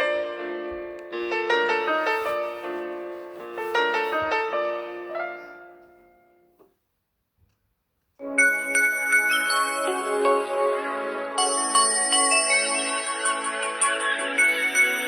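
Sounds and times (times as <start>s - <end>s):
polyphonic piano-like ringtone: 0.0s - 6.4s, 8.2s - 15.0s
bell-like ringtone: 8.4s - 10.8s, 11.4s - 15.0s.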